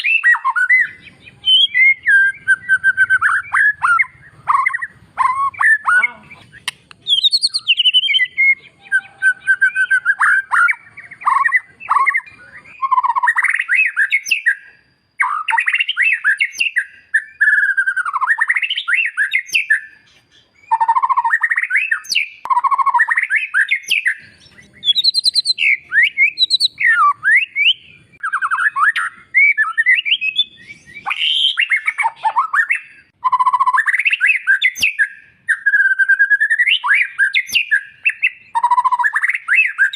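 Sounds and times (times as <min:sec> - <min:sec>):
bird singing whistled song: 0:00.0 - 0:39.9.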